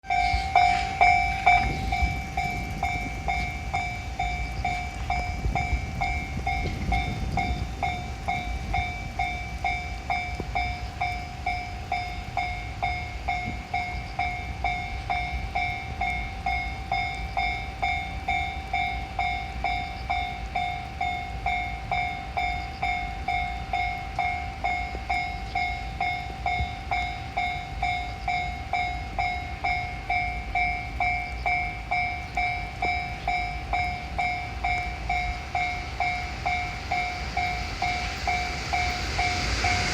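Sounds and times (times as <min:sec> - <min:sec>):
railroad crossing bell ringing: 0:00.0 - 0:39.9
low rumble: 0:33.3 - 0:39.9.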